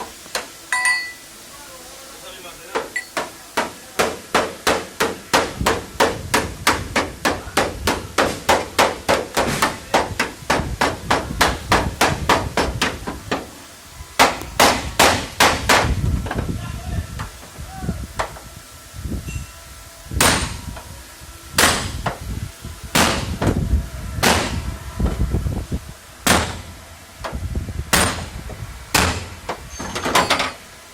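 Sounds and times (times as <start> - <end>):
hammer beating on car body panel: 2.8 - 13.5, 14.2 - 16.4, 20.2 - 20.6, 21.6 - 22.2, 22.9 - 23.6, 24.2 - 24.6, 26.2 - 29.6.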